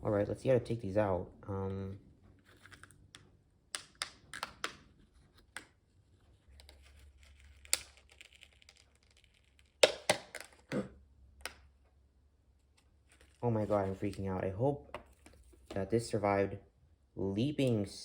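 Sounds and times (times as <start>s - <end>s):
plastic packaging snapping: 6.6s - 10.7s.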